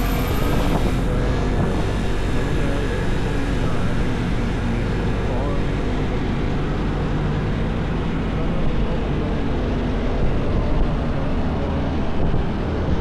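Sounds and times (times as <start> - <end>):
scooter engine running: 0.0 - 5.6
wind and road noise: 0.0 - 13.0.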